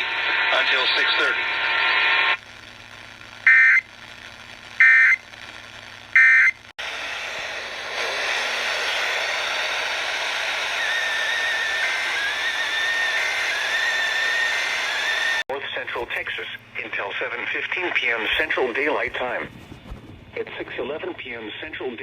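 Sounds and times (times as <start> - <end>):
radio static hiss: 0.0 - 6.2, 6.8 - 22.0.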